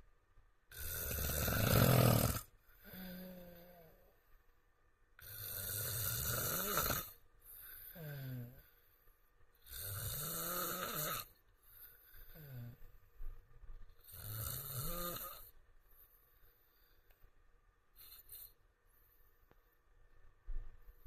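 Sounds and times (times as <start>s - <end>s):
man snoring: 0.7s - 4.1s, 5.2s - 8.7s, 9.6s - 11.3s, 12.3s - 12.8s, 14.0s - 15.5s.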